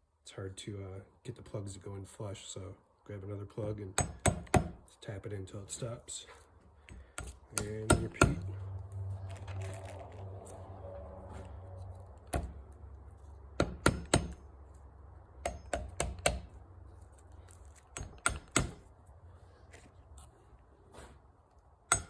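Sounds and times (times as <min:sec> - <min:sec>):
hammer tapping wooden dowels: 0:15.4 - 0:16.5.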